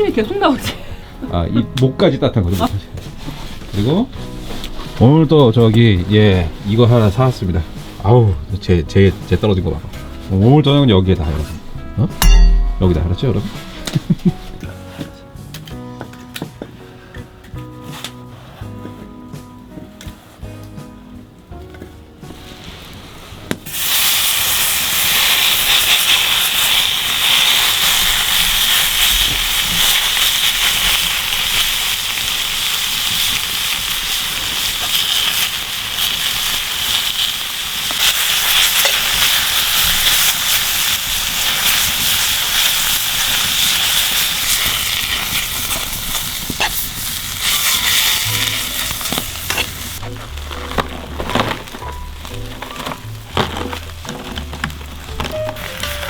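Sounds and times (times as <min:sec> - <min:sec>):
food sizzling in a hot pan: 0:23.6 - 0:50.2.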